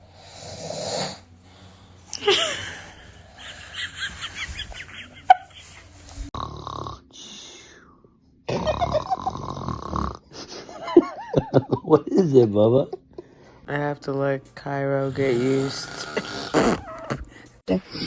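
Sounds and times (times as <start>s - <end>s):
man snoring: 0.1s - 1.4s, 6.4s - 7.5s, 8.5s - 10.3s, 15.0s - 17.6s.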